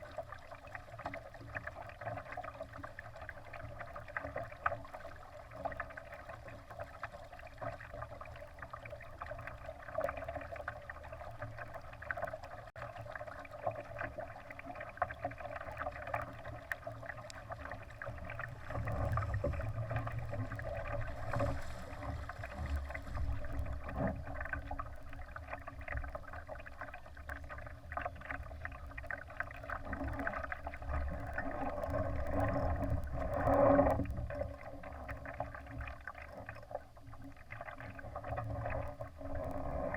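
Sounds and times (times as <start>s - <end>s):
low rumble: 17.4s - 25.4s.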